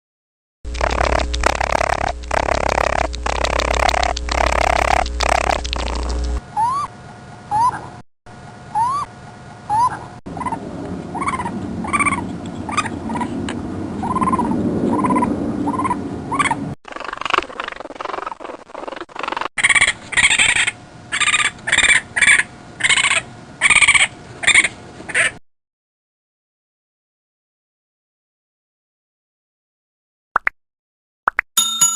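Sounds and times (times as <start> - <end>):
animal chirping calls: 0.8 - 8.0, 8.7 - 9.1, 9.7 - 13.4, 14.0 - 25.4.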